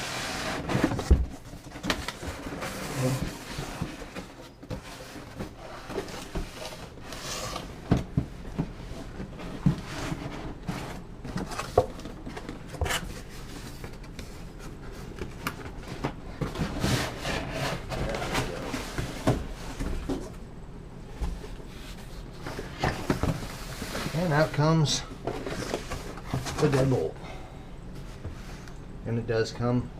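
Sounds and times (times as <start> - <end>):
cardboard scraping and rubbing: 0.0 - 8.0, 8.6 - 20.3, 21.6 - 24.6, 25.2 - 27.1
knocks and rustles: 0.6 - 20.4, 21.1 - 24.4.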